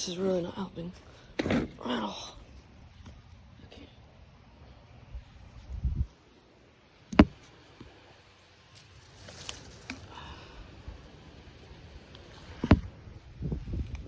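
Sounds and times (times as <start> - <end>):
soft rustling: 8.7 - 10.3.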